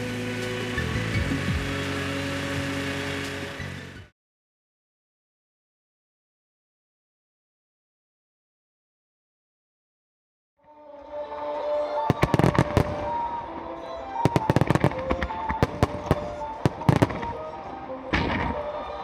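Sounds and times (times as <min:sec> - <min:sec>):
music with sustained notes: 0:00.0 - 0:04.1, 0:10.6 - 0:19.0
fireworks bangs and crackles: 0:12.0 - 0:13.4, 0:14.0 - 0:19.0.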